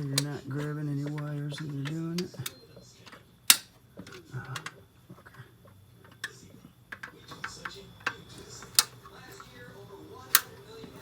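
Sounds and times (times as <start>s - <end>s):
distributor cap latches clicking: 3.5s - 3.7s.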